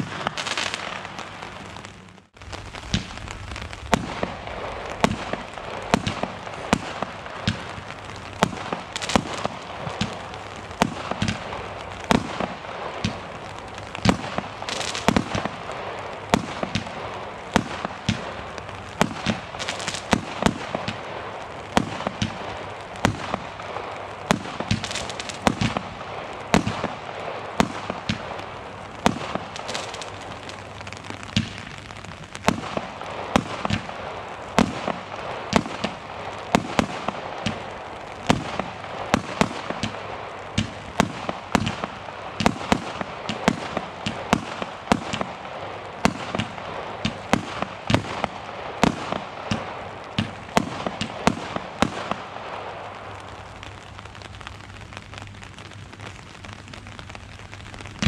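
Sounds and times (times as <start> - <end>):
crackling hiss: 0.0 - 58.0
fireworks bangs: 0.0 - 58.0.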